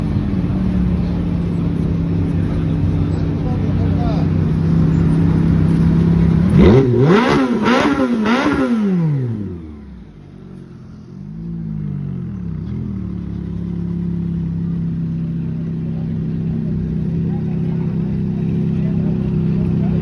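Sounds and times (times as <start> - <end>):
car engine idling: 0.0 - 20.0
car engine revving: 0.0 - 20.0.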